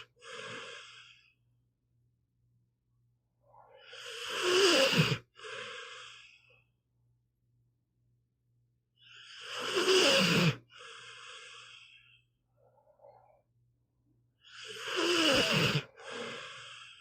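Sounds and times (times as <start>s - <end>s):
dog snoring: 3.7s - 6.3s, 9.0s - 11.8s, 14.4s - 17.0s.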